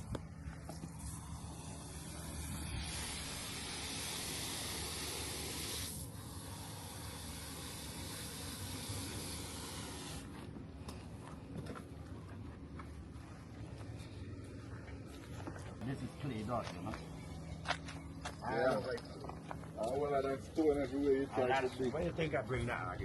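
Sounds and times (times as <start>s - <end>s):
spraying hiss: 0.7s - 10.3s.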